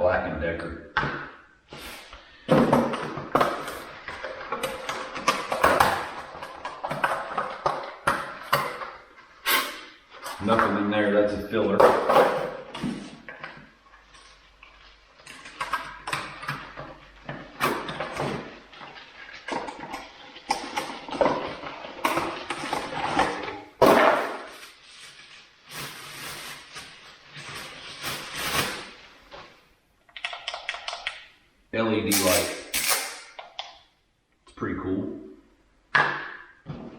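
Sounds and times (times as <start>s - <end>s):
packaging rustling: 12.2s - 29.6s.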